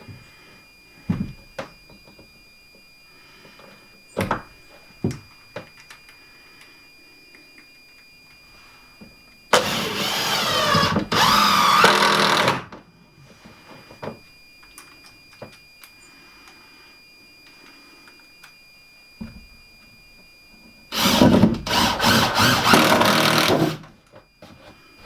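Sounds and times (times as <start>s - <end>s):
power saw cutting timber: 9.6s - 12.8s, 20.9s - 23.9s.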